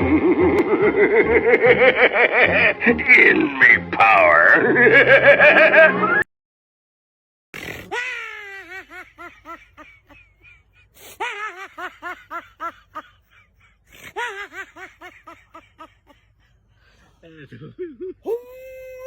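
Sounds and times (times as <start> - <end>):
high-pitched laugh: 0.0 - 3.6, 4.6 - 6.2, 7.8 - 16.5.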